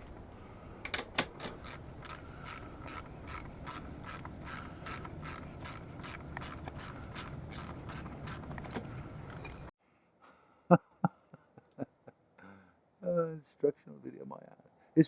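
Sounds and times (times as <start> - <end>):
socket ratchet clicking: 0.8 - 9.7.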